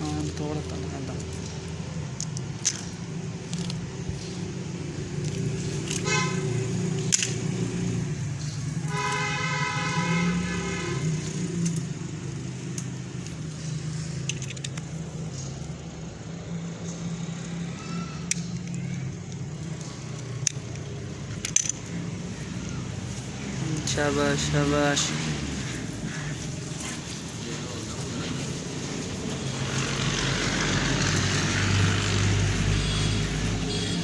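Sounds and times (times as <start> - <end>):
small scattered clicks: 0.0 - 4.5, 11.2 - 15.9, 17.3 - 23.9
road traffic engine rumble: 0.0 - 34.0
vehicle horn: 5.9 - 6.7, 8.8 - 11.5, 32.3 - 34.0.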